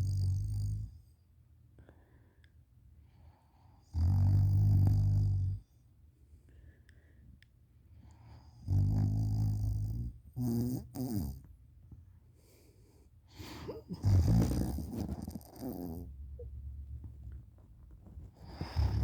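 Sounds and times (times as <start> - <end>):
short snorts: 13.3 - 16.1, 18.4 - 19.0
person snoring: 13.4 - 16.1, 18.5 - 19.0.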